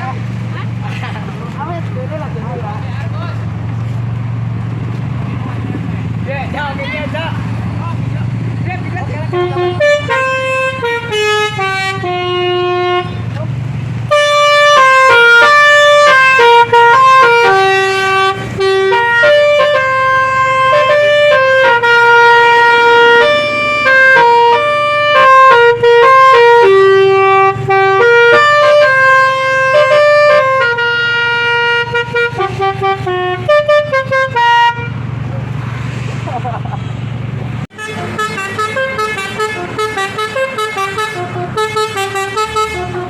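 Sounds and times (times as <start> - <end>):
musical car horn playing tune: 9.3 - 13.3, 14.1 - 35.0, 37.7 - 43.0.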